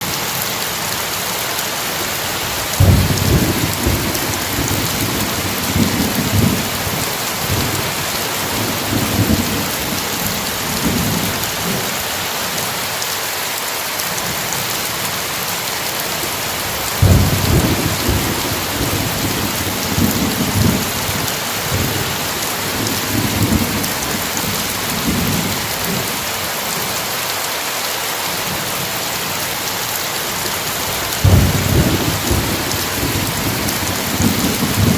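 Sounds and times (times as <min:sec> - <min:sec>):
steady rain hissing: 0:00.0 - 0:34.9
thunder rumbling: 0:02.5 - 0:11.9, 0:16.6 - 0:26.1, 0:30.8 - 0:34.9.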